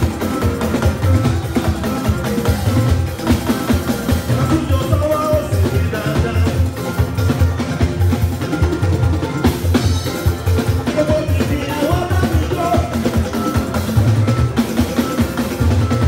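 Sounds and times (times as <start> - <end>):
loud music with drum beat: 0.0 - 16.0
person singing: 4.3 - 6.8, 10.8 - 13.0.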